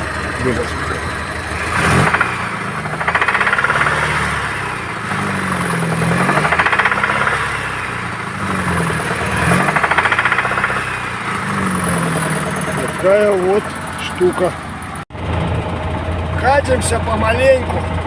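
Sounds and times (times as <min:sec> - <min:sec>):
engine knocking: 0:00.0 - 0:15.0
van engine revving: 0:00.0 - 0:18.0.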